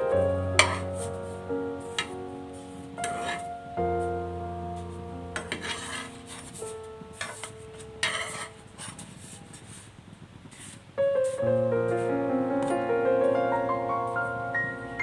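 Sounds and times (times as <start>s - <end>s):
piano background music: 0.0s - 9.4s, 10.9s - 15.0s
scraping and rubbing handling: 3.0s - 3.5s, 5.4s - 11.4s.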